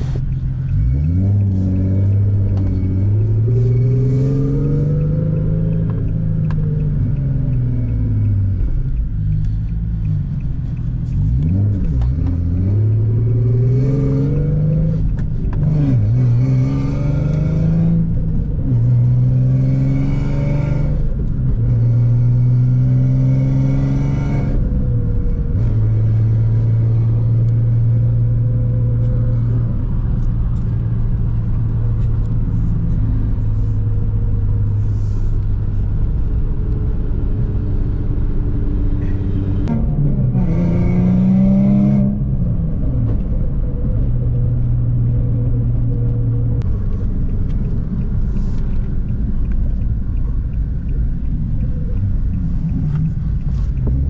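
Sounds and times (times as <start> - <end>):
car engine accelerating and cruising: 0.0 - 54.0.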